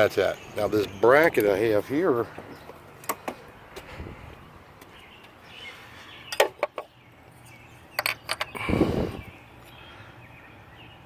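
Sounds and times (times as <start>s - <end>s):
metal car parts clinking: 7.9s - 8.6s.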